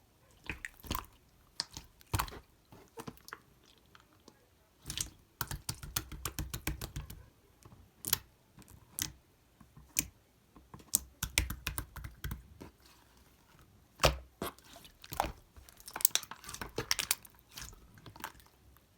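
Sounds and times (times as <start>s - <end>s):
slime clicking and popping: 4.9s - 7.2s, 10.9s - 12.4s.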